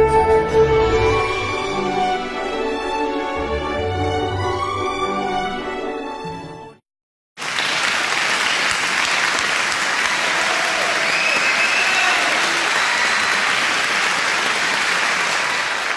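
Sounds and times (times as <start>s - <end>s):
music: 0.0s - 6.8s
crowd applauding: 7.4s - 15.9s.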